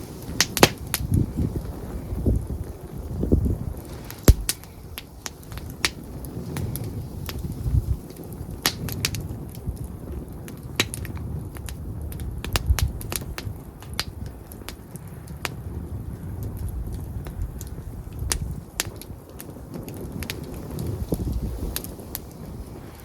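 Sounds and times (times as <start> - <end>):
campfire pops and snaps: 0.0 - 1.7, 3.7 - 23.0
fire low rumble: 0.0 - 23.0.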